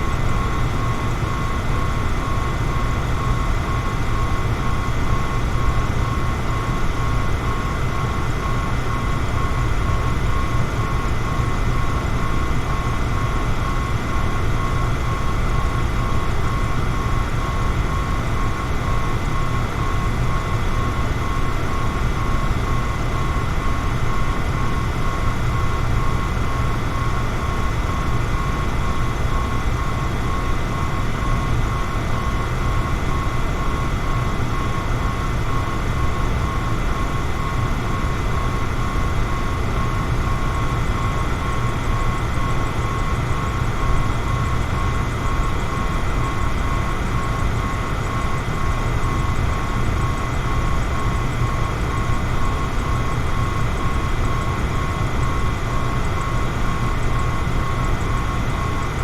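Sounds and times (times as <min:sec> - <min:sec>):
electric fan running: 0:00.0 - 0:59.0.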